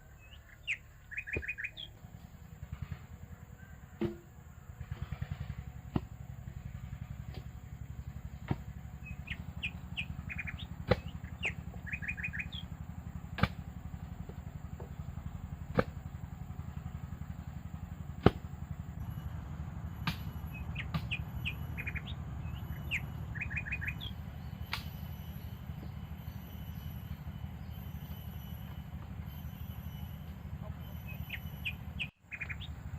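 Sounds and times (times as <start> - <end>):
small birds chirping: 0.0 - 3.9, 4.6 - 32.9
sharp knocks: 4.0 - 4.3, 13.4 - 13.6.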